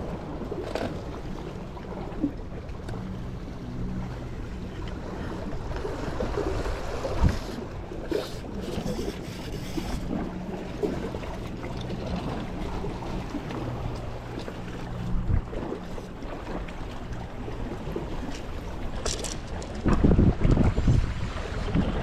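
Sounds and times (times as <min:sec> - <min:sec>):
low hum: 0:00.0 - 0:22.0
sea water lapping: 0:00.0 - 0:22.0
wind buffeting microphone: 0:17.2 - 0:22.0.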